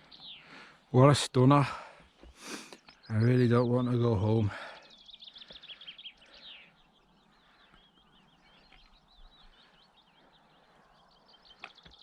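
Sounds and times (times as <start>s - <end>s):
songbird twittering: 0.0s - 0.7s, 2.0s - 12.0s.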